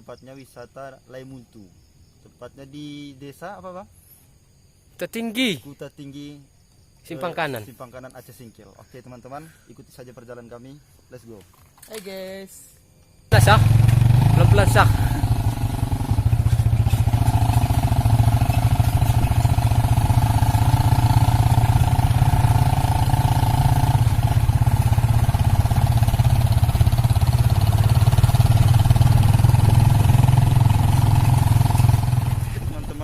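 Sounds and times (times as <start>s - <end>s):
motorcycle engine running: 13.3s - 33.0s.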